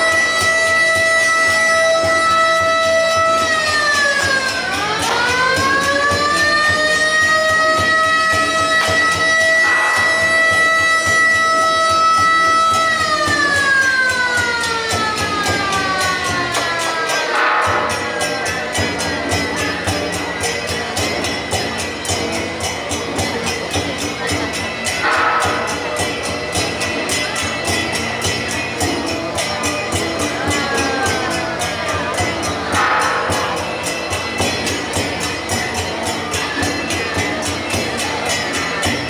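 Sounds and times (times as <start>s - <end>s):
air-raid siren wailing: 0.0s - 18.8s.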